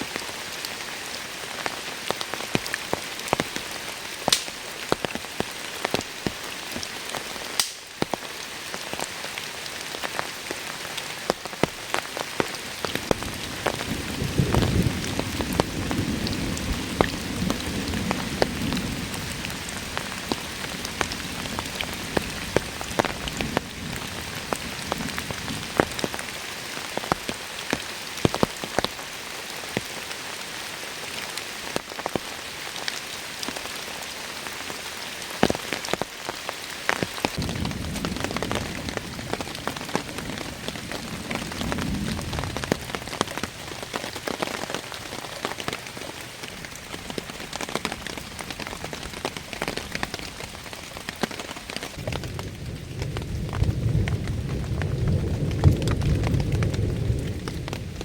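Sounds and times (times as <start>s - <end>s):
heavy rain: 0.0s - 58.0s
thunder rumble: 12.9s - 26.2s, 37.4s - 43.9s, 52.0s - 58.0s.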